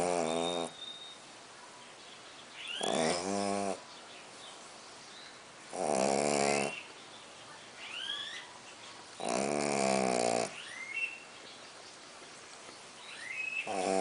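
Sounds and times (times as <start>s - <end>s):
dog snoring: 0.0s - 0.8s, 2.8s - 3.8s, 5.7s - 6.8s, 9.2s - 10.6s, 13.6s - 14.0s.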